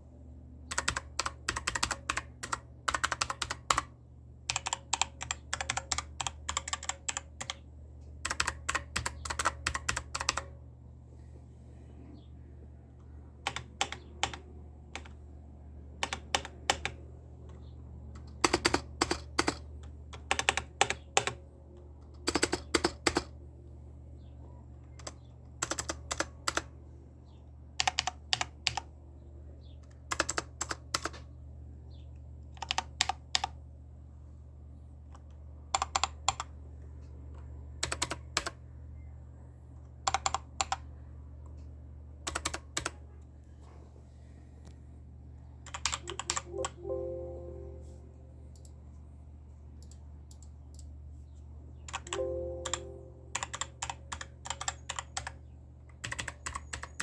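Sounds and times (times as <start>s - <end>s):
mechanical keyboard typing: 0.7s - 3.9s, 4.5s - 7.6s, 8.2s - 10.6s, 13.4s - 15.2s, 16.0s - 17.0s, 18.1s - 21.4s, 22.1s - 23.3s, 25.0s - 26.7s, 27.8s - 28.9s, 30.1s - 31.2s, 32.6s - 33.6s, 35.7s - 36.5s, 37.8s - 38.6s, 40.0s - 40.8s, 42.2s - 43.0s, 45.6s - 46.9s, 51.9s - 57.0s
low hum: 44.6s - 49.9s, 52.0s - 54.0s.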